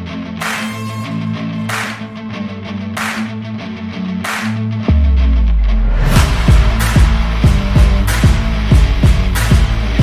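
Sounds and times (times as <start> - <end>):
hip-hop beat with guitar riff: 0.0 - 10.0
snare hits: 3.0 - 3.4, 6.2 - 10.0
deep bass note sweep: 5.4 - 10.0.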